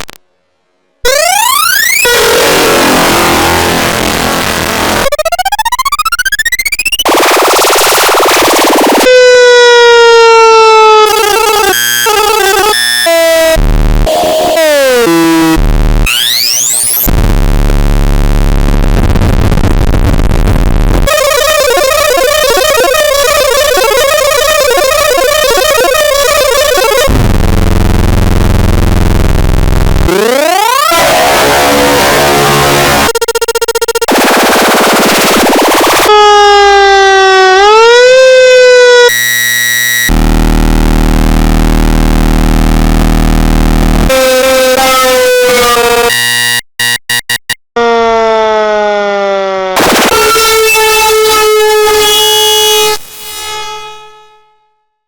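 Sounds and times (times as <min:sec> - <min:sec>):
harsh noise: 0:01.0 - 0:10.2, 0:11.0 - 0:36.4, 0:37.5 - 0:47.6, 0:49.6 - 0:54.1
processed fire truck siren: 0:01.0 - 0:17.1, 0:21.0 - 0:27.3, 0:30.1 - 0:40.3, 0:44.1 - 0:46.5, 0:47.8 - 0:53.0.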